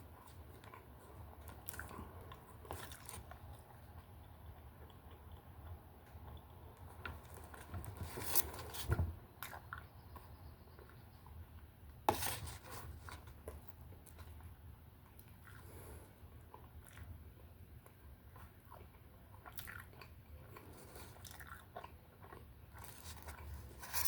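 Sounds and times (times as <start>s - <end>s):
person chewing and biting: 0.3s - 6.8s, 17.8s - 24.0s.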